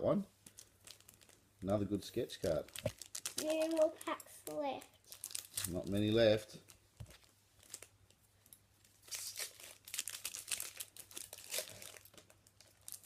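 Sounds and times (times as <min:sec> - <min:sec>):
card pack wrapper crinkling: 0:00.5 - 0:01.4, 0:02.5 - 0:08.0, 0:09.0 - 0:13.0.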